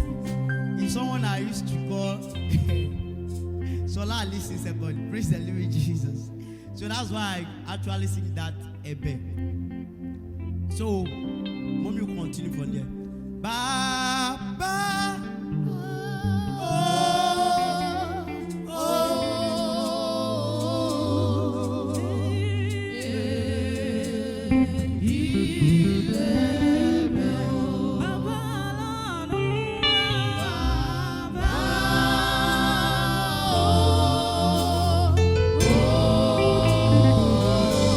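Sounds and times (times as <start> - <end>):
gospel lead singer: 0.0 - 9.5, 10.7 - 37.9
backing singers: 15.7 - 29.4, 30.3 - 37.9.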